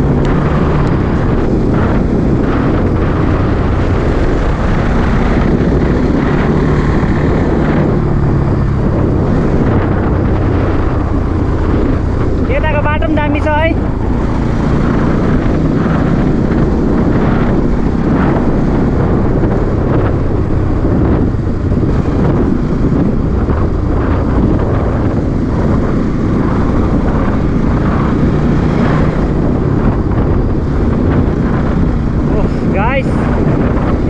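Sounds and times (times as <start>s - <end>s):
motorcycle engine running: 0.0s - 34.0s
wind noise on microphone: 0.0s - 34.0s.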